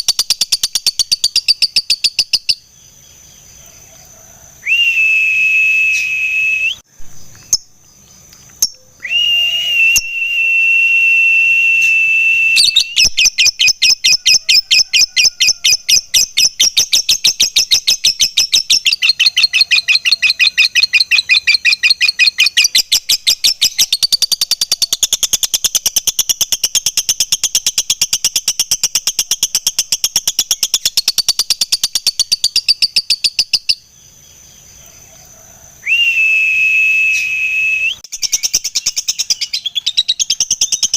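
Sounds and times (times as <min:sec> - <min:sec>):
lovebird rapid chattering trill: 0:00.0 - 0:02.7, 0:12.6 - 0:33.9, 0:38.1 - 0:40.9
lovebird whistle notes: 0:04.6 - 0:06.8, 0:08.6 - 0:14.1, 0:35.8 - 0:40.9.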